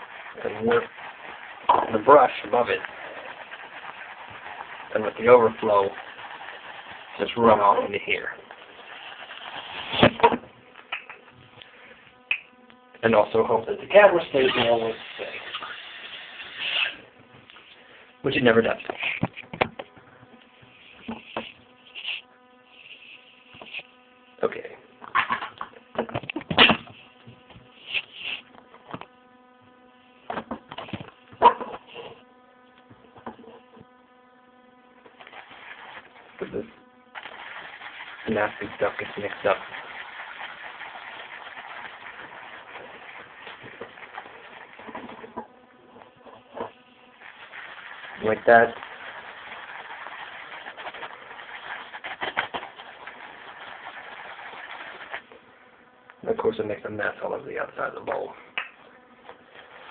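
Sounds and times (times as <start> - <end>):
shaving brush squelching in lather: 0.0 - 10.1, 13.2 - 17.0, 20.6 - 23.9, 35.2 - 45.4, 47.1 - 55.3, 59.4 - 59.9
faint steady buzz: 0.0 - 59.9
brush tapping bowl: 0.4 - 8.1.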